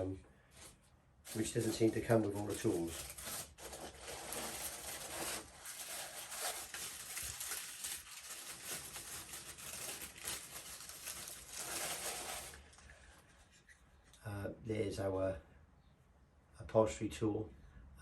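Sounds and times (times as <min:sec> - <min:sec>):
paper packaging rustling: 0:00.6 - 0:13.7.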